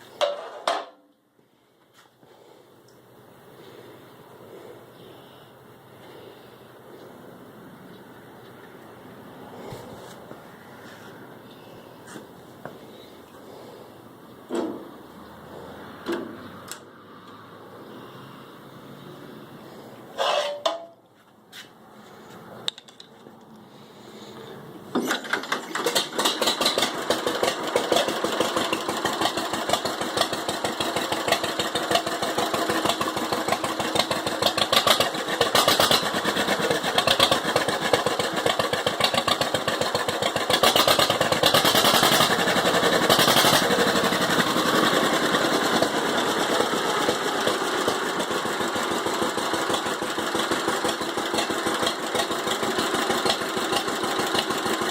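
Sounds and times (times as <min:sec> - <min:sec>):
tractor engine running: 0:21.7 - 0:54.9.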